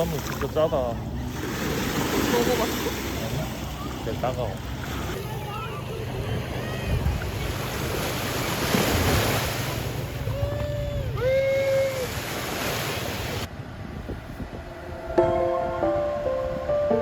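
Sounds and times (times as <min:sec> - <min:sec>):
sea waves rushing: 0:00.0 - 0:17.0
wind buffeting microphone: 0:06.2 - 0:07.7, 0:13.2 - 0:16.7
music: 0:15.1 - 0:17.0.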